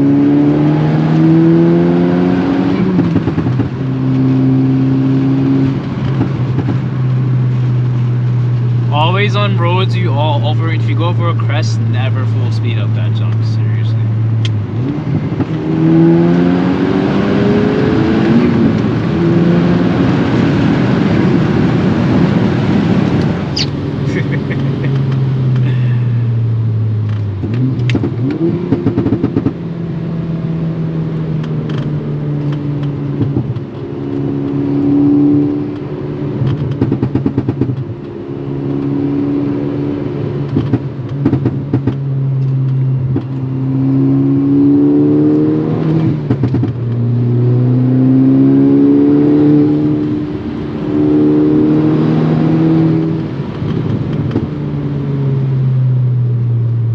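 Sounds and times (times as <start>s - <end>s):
car engine accelerating: 0.0s - 56.9s
exhaust crackling: 2.8s - 44.7s.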